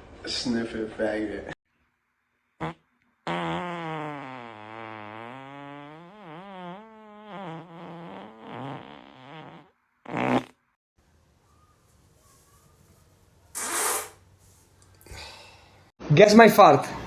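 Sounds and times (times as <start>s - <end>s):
long wavering fart: 2.6s - 10.6s.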